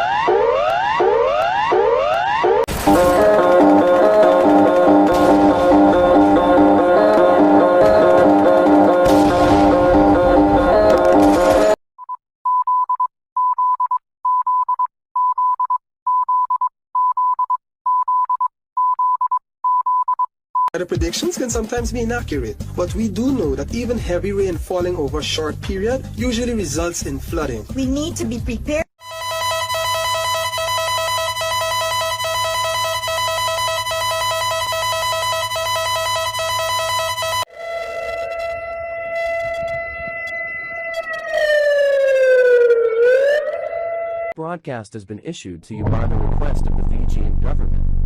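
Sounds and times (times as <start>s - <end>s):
emergency alert attention tone: 0.0s - 11.8s, 29.0s - 44.3s
guitar music: 2.8s - 11.8s
low hum: 45.8s - 48.0s.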